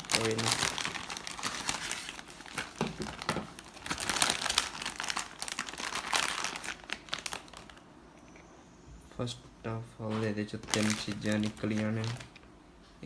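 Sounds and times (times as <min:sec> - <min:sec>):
packaging crinkling: 0:00.0 - 0:07.8, 0:10.6 - 0:12.5.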